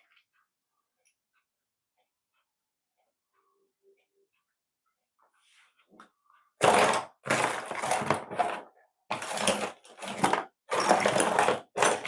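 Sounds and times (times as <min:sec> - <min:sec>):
plastic parts clattering: 0:06.6 - 0:12.0.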